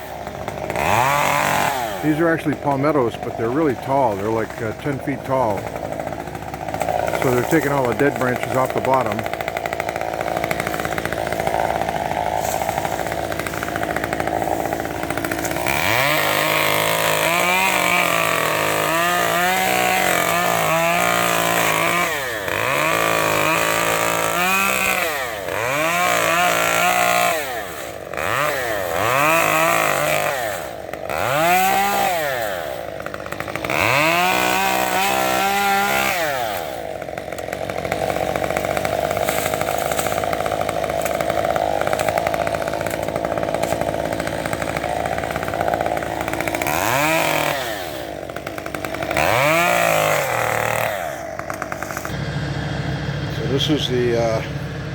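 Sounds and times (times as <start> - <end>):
chainsaw idling and revving: 0.0 - 54.9.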